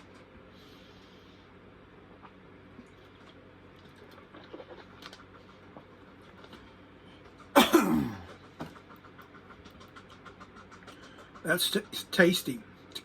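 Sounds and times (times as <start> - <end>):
chewing and mouth sounds: 2.0 - 7.6
loud cough: 7.6 - 8.3.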